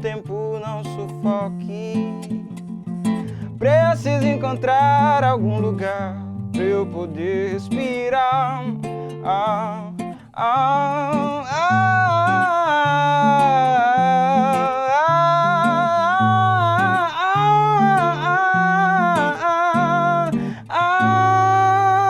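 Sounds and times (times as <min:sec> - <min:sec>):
acoustic guitar: 0:00.0 - 0:22.0
person singing wordless melody: 0:03.1 - 0:22.0.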